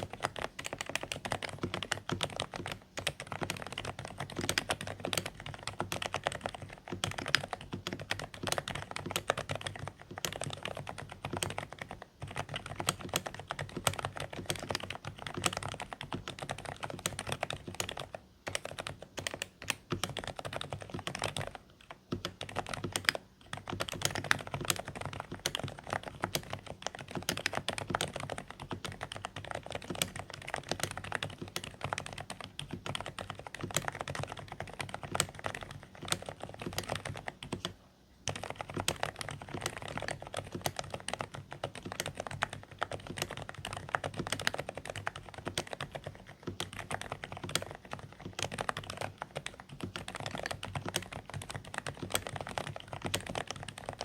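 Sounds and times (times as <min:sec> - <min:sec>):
muffled keyboard typing: 0:00.0 - 0:54.0.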